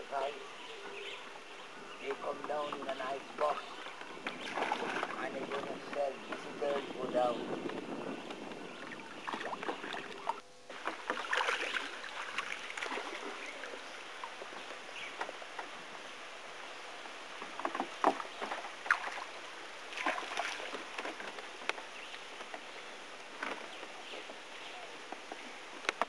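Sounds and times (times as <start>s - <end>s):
water lapping against a raft: 2.0s - 26.0s
short splashes and knocks: 2.3s - 6.9s, 7.6s - 15.8s, 17.4s - 19.3s, 19.9s - 22.7s.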